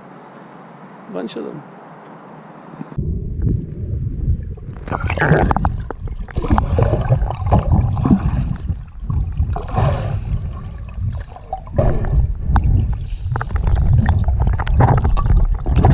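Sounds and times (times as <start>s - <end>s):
heavy low rumble: 2.9s - 15.9s
river water gurgling and splashing: 4.6s - 12.3s.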